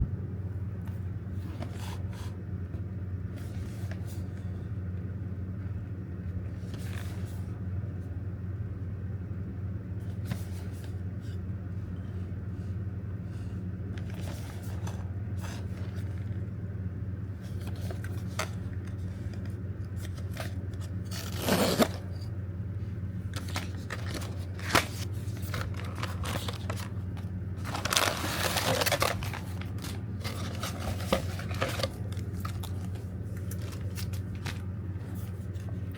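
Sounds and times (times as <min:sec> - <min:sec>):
steady low hum: 0:00.0 - 0:35.9
packaging rustling: 0:17.5 - 0:22.3, 0:23.3 - 0:35.9
packaging scrapes and clicks: 0:17.5 - 0:22.3, 0:23.3 - 0:35.8.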